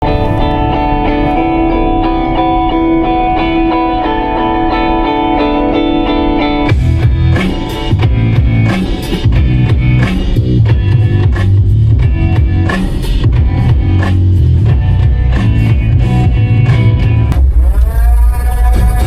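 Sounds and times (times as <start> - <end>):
ringing guitar chords: 0.0 - 17.3
band with drums: 6.7 - 17.9.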